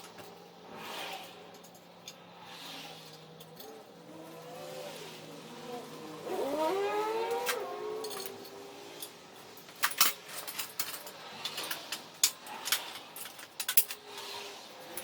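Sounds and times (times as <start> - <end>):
metal tools clinking: 3.0 - 4.6, 6.2 - 15.0.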